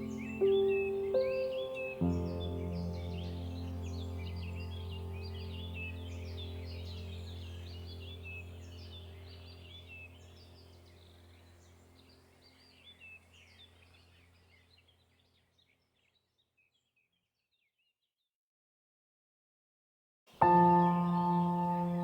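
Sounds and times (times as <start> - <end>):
birds chirping: 0.0 - 16.9, 20.4 - 22.0
low steady drone: 2.0 - 11.8.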